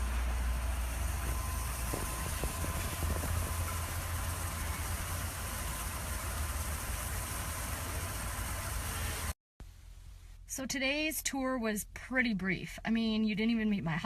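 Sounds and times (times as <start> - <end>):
engine idling: 0.0 - 9.4.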